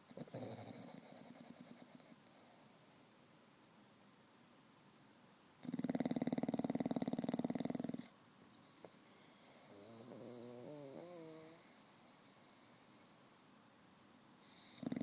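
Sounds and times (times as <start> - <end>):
dog snoring: 0.1 - 2.9, 5.6 - 8.1, 9.4 - 13.4, 14.4 - 15.0.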